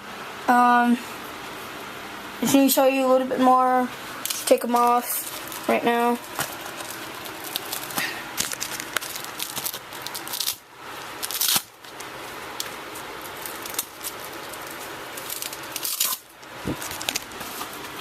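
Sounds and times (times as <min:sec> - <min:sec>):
knee pads and straps rustling: 0:04.2 - 0:18.0.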